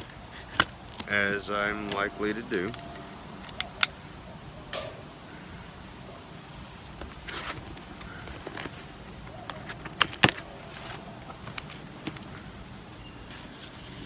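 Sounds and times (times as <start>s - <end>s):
package being handled and opened: 6.8s - 12.5s.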